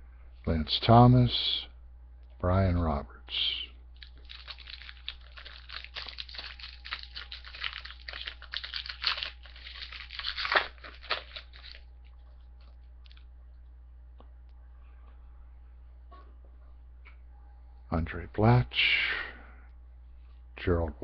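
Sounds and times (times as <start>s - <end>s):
foil wrapper crinkling: 4.0s - 13.3s.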